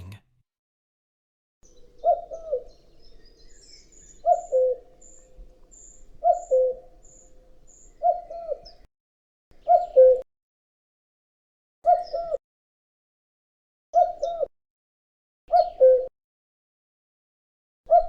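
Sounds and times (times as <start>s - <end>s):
faint high bird chirps: 1.6s - 8.9s
cuckoo calling: 1.7s - 8.9s, 9.6s - 10.2s.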